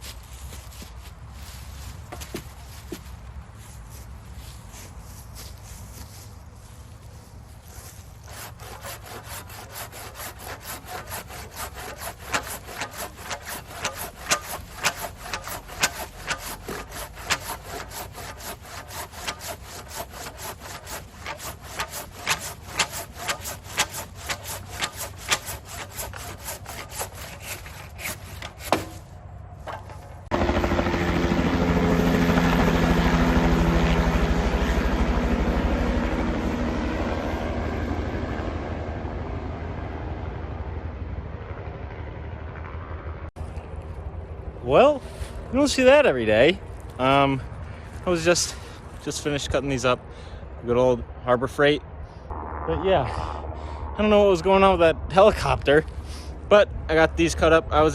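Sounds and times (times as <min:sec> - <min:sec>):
hand saw cutting log: 0:07.7 - 0:29.1
helicopter drone: 0:30.3 - 0:44.6, 0:52.3 - 0:56.4.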